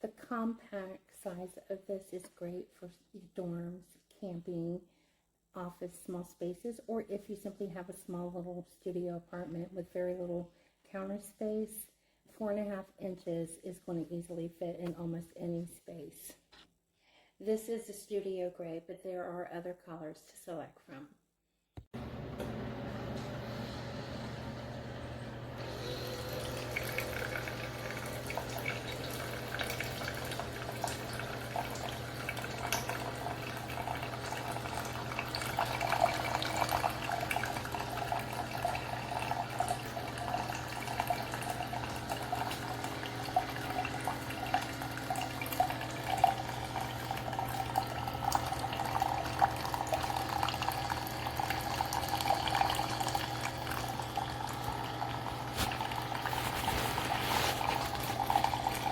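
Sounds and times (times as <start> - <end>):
coffee maker water gurgling: 22.0 - 58.9.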